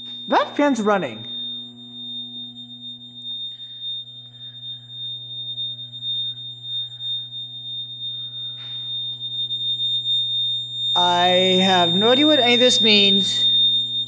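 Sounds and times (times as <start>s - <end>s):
fan humming: 0.0s - 3.7s, 7.8s - 14.0s
high-pitched electrical ringing: 0.0s - 14.0s.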